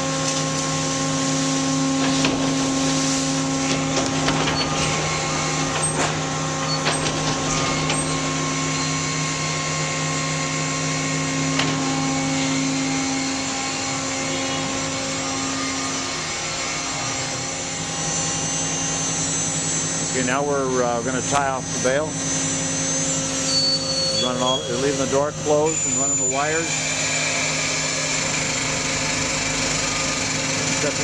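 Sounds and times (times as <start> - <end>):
baler machine hum: 0.0 - 31.0
knocks and rattles: 3.7 - 8.2.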